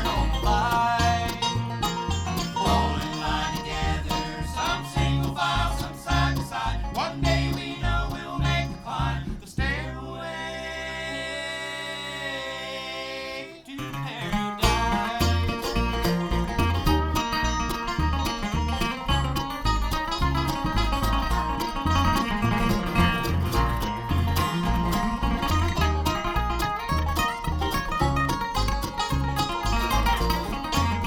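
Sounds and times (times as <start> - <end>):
bluegrass band playing: 0.0 - 31.0.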